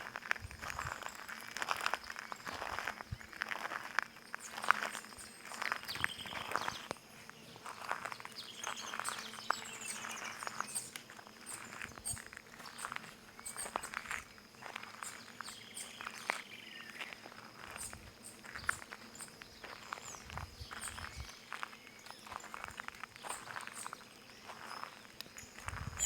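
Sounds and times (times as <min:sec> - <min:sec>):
footsteps over stones: 0:00.0 - 0:26.0
birds singing and chirping: 0:04.4 - 0:14.0, 0:15.0 - 0:26.0.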